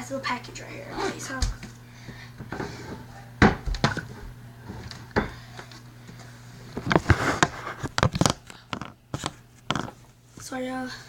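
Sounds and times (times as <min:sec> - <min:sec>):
objects knocking and clunking: 0:02.4 - 0:05.4, 0:06.8 - 0:10.0.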